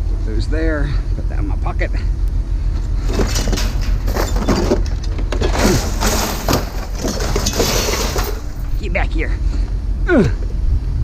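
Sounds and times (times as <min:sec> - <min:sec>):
steady low rumble: 0:00.0 - 0:11.0
scrap metal clattering: 0:03.0 - 0:08.9.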